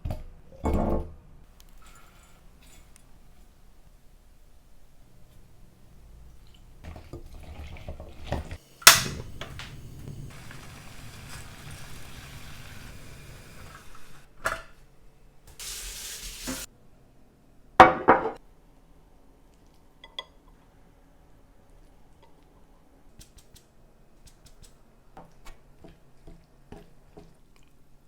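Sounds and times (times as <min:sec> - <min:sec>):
scraping and stirring: 0:01.5 - 0:08.6
short hiss: 0:08.6 - 0:14.3, 0:15.5 - 0:16.7.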